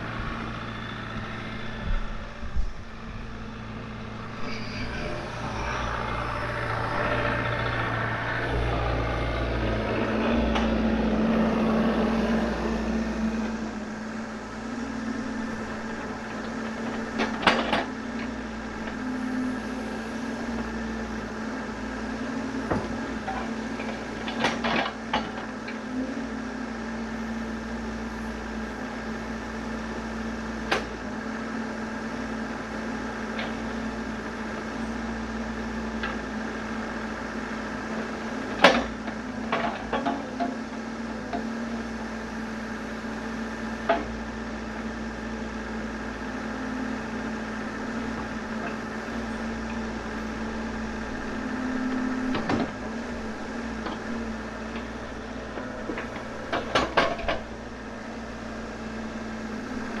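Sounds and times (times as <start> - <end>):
excavator engine droning: 0.0 - 60.0
sharp knocks and clanks: 55.9 - 57.5.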